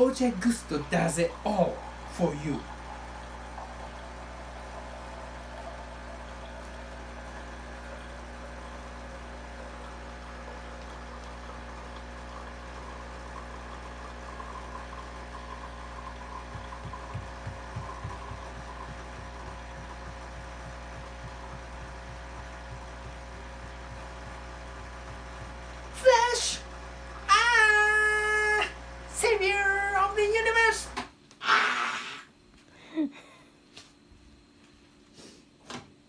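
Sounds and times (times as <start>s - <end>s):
coffee machine pump humming: 0.0s - 31.1s
rhythmic throbbing: 16.0s - 26.0s.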